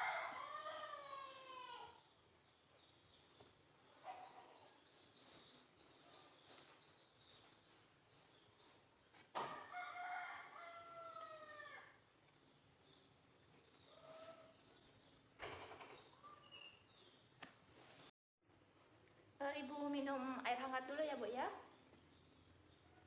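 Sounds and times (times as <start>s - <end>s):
rooster crowing: 0.0s - 2.0s, 9.5s - 12.0s
small bird chirping: 2.0s - 9.2s, 12.1s - 17.4s.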